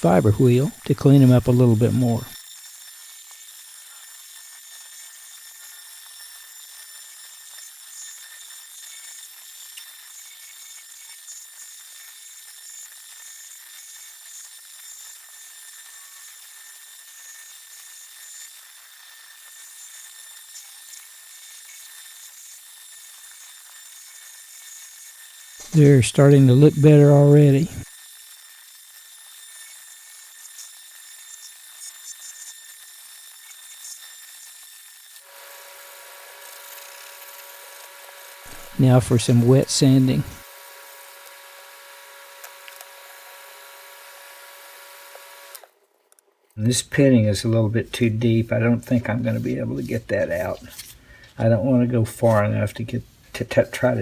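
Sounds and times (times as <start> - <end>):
abrasive wheel scrubbing steel: 25.7 - 27.8, 35.3 - 45.6.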